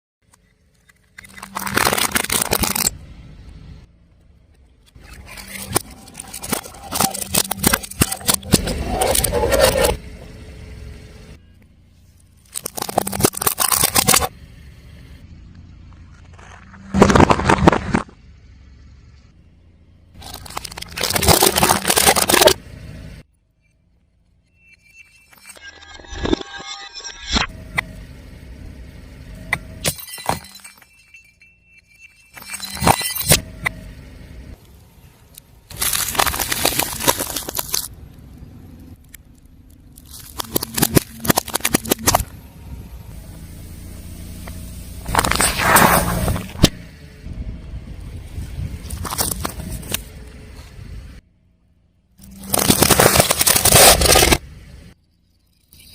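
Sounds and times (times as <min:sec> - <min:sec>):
car tyre crushing brittle objects: 0:00.3 - 0:03.0, 0:04.7 - 0:10.3, 0:12.1 - 0:14.4, 0:15.7 - 0:18.2, 0:20.1 - 0:22.6, 0:34.5 - 0:46.8, 0:48.6 - 0:50.4, 0:52.2 - 0:55.9.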